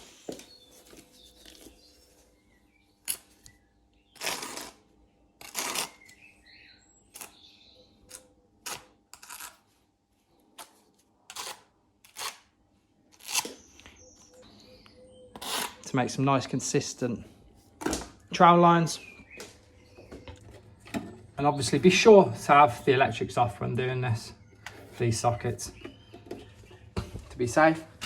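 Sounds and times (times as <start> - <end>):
trowel scraping adhesive: 4.2 - 4.8, 5.4 - 6.1, 8.1 - 9.6, 15.4 - 15.9.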